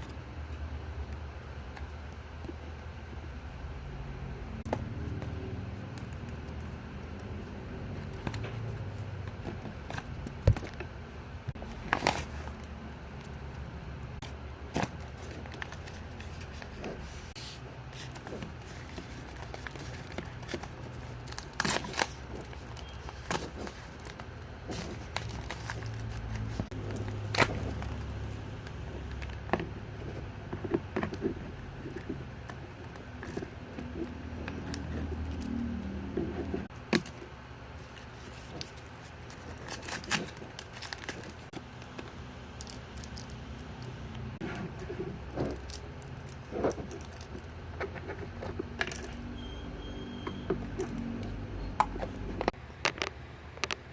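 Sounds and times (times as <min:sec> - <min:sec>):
low steady hum: 0:00.0 - 0:53.9
hands handling packaging: 0:11.6 - 0:13.6, 0:14.2 - 0:35.8, 0:37.8 - 0:49.4.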